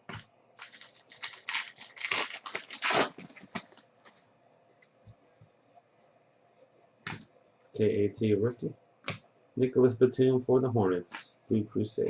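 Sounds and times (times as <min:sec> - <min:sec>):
plastic wrapper crinkling: 0:00.6 - 0:03.9.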